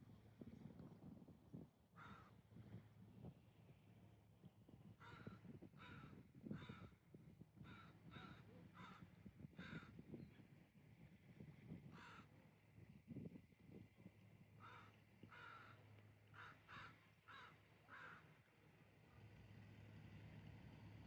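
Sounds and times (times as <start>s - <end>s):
crow cawing: 2.0s - 2.3s, 5.0s - 6.9s, 7.7s - 9.0s, 12.0s - 12.3s, 14.6s - 18.3s.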